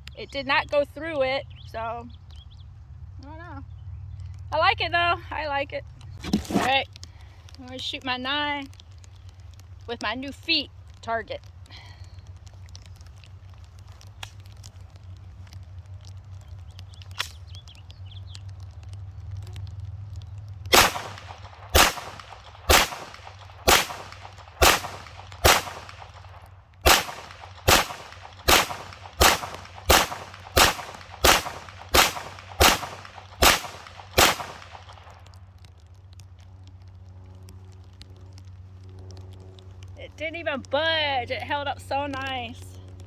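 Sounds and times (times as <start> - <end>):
low steady background noise: 0.0 - 43.0
handgun shots: 20.7 - 26.0, 26.8 - 34.8.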